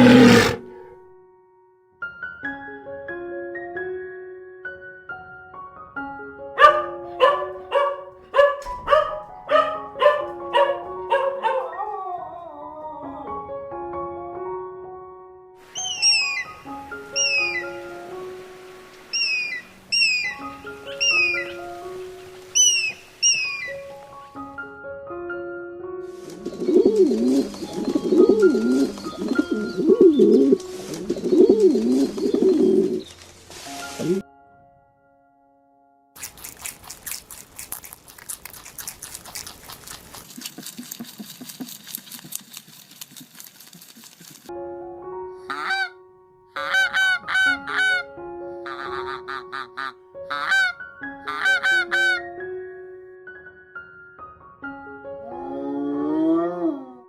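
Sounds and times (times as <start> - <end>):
pigeon cooing: 0.0 - 0.6, 6.6 - 13.2, 15.8 - 17.8, 19.2 - 23.9, 26.2 - 33.1, 33.9 - 34.2, 48.7 - 50.7, 51.3 - 52.2
music with piano-like notes: 0.6 - 37.7, 44.5 - 57.0
short sharp animal calls: 15.8 - 16.5, 17.2 - 17.7.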